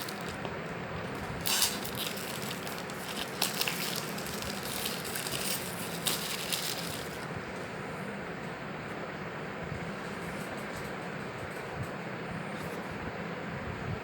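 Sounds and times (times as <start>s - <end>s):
packaging crinkling and rustling: 0.0s - 7.3s.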